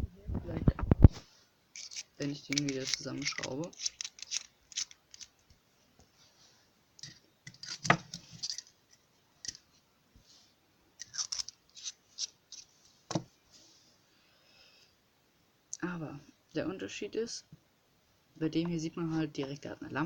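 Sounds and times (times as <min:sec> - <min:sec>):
pen threads scraping: 0:01.8 - 0:05.4.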